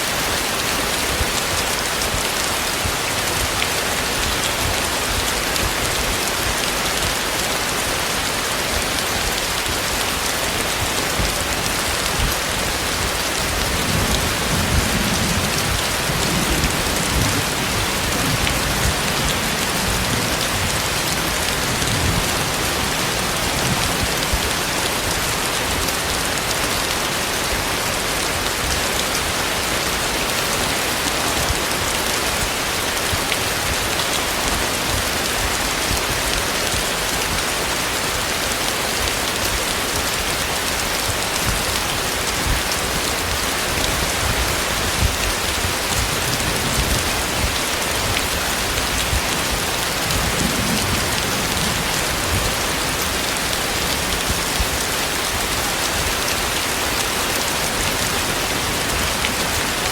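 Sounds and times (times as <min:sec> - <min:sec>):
heavy rain pouring: 0:00.0 - 0:59.9
low thunder rumble: 0:12.9 - 0:25.3, 0:46.0 - 0:56.1.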